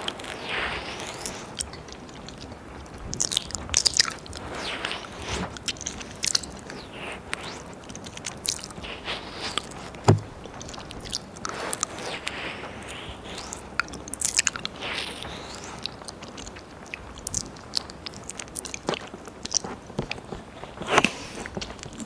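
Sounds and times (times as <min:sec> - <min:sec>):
soft breaths: 0:04.1 - 0:17.8, 0:19.6 - 0:22.0
tongue licks and lip smacks: 0:07.9 - 0:08.8, 0:15.5 - 0:19.8
loud thump: 0:10.1 - 0:10.4.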